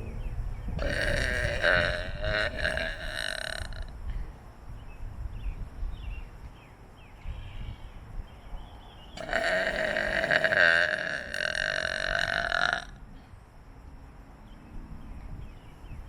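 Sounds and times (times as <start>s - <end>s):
person burping: 0.8s - 3.9s, 9.2s - 13.0s.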